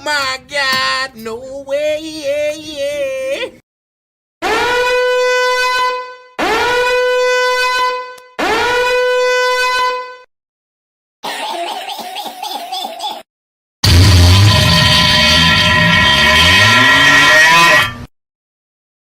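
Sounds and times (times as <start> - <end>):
horn-like sound effect blasts: 4.4 - 10.2, 13.8 - 18.1
rough sound effect: 13.8 - 18.1.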